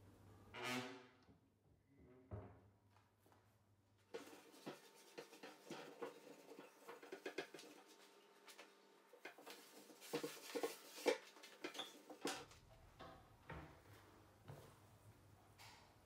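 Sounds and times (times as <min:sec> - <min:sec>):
household items knocking and clattering: 0:04.1 - 0:08.0, 0:09.2 - 0:13.9.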